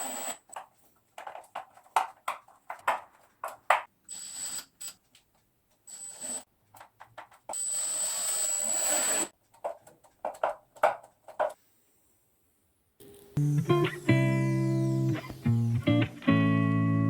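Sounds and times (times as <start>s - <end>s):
guitar music: 13.1s - 17.0s.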